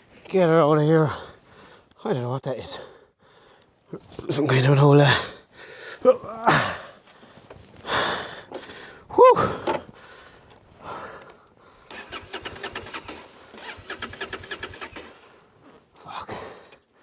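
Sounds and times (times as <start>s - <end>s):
motorcycle engine turning over: 11.9s - 15.5s.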